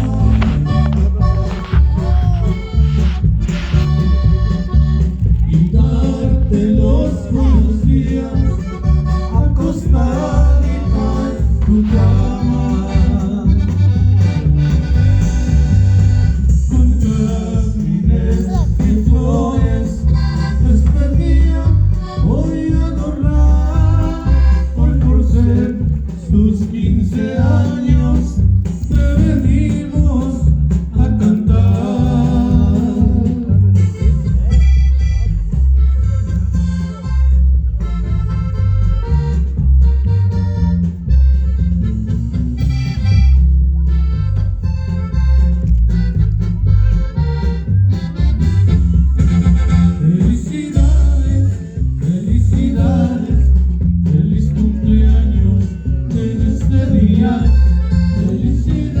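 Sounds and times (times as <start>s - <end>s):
person singing: 0.0s - 3.0s, 5.4s - 14.2s
loud music with heavy bass: 0.0s - 59.0s.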